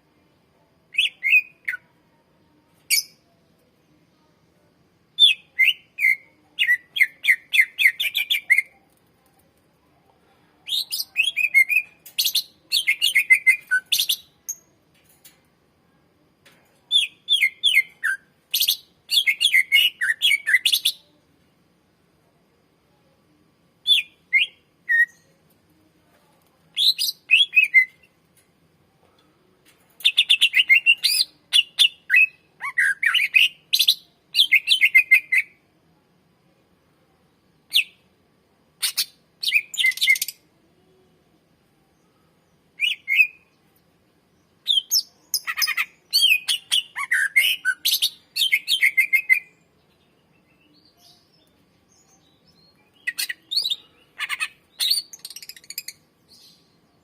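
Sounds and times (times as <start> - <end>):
bird singing whistled notes: 0.9 - 1.8, 5.2 - 8.7, 10.7 - 14.7, 17.0 - 21.0, 23.8 - 25.4, 26.8 - 28.1, 30.1 - 35.6, 38.8 - 40.4, 42.8 - 43.6, 44.6 - 56.8.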